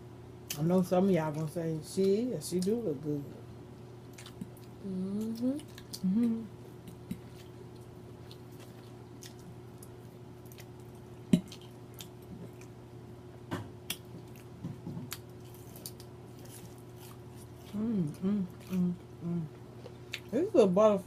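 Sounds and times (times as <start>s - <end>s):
steady low hum: 0.0s - 21.0s
chewing and wet smacking: 4.0s - 12.8s, 13.8s - 20.3s.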